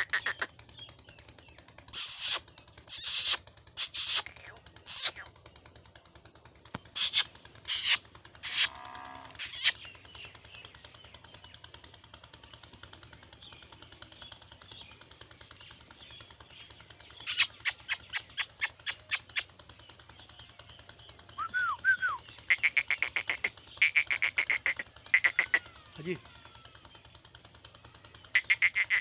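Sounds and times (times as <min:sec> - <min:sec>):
bird chirping: 0:00.0 - 0:00.5, 0:01.9 - 0:05.3, 0:06.7 - 0:09.8, 0:17.2 - 0:19.4
bird squawking: 0:00.0 - 0:00.5, 0:01.9 - 0:05.3, 0:06.7 - 0:09.8, 0:17.2 - 0:19.5, 0:21.5 - 0:26.2, 0:28.3 - 0:29.0.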